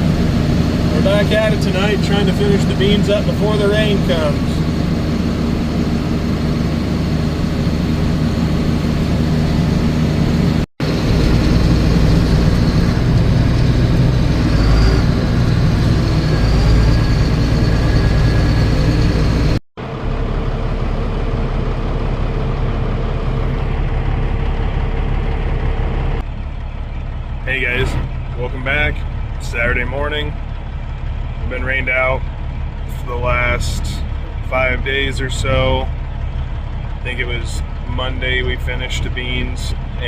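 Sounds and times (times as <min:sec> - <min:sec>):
heavy machinery engine running: 0:00.0 - 0:40.0.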